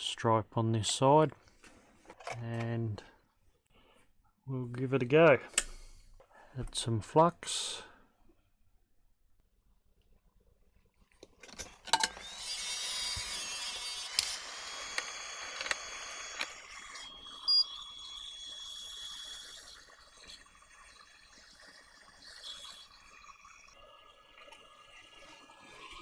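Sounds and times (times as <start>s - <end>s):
tools clicking on circuit board: 11.6s - 17.8s
faint high whine: 11.9s - 21.0s
hissing: 12.2s - 23.2s.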